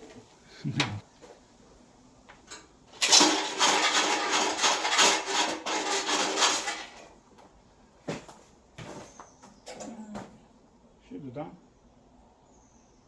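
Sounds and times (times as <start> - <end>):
rod scraping inside metal rail: 3.0 - 7.1.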